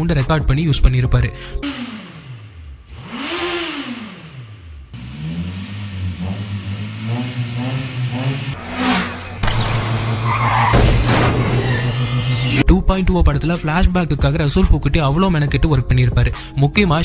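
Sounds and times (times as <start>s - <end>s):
car engine revving: 1.6s - 12.6s
sudden rush of noise: 8.6s - 12.6s.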